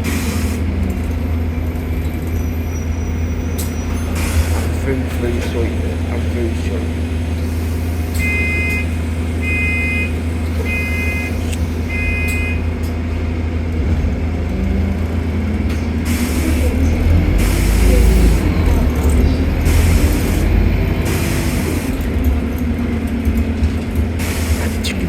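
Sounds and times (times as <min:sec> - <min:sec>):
air hiss: 0:00.0 - 0:00.7, 0:16.1 - 0:18.5, 0:19.6 - 0:22.0, 0:24.2 - 0:25.0
bus diesel engine humming: 0:00.0 - 0:25.0
two-tone electronic beeps: 0:08.2 - 0:12.7.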